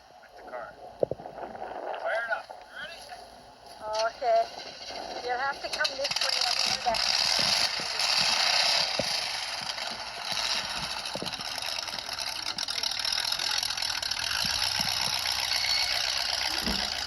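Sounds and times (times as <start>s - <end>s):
car engine running with clatter: 3.8s - 17.0s.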